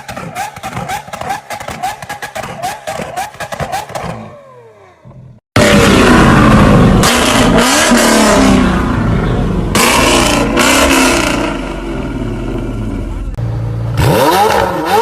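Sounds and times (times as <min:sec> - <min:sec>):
car engine revving hard: 0:05.6 - 0:13.0, 0:13.9 - 0:15.0.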